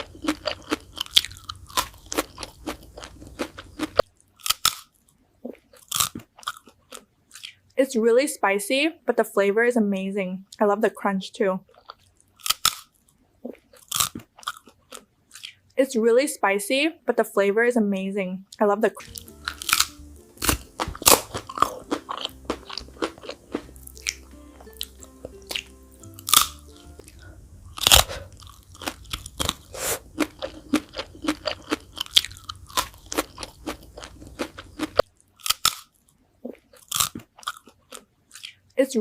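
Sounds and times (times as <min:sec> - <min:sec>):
crunchy chewing: 0:00.0 - 0:07.6, 0:11.7 - 0:15.6, 0:19.0 - 0:38.6
soft background music: 0:18.8 - 0:28.9.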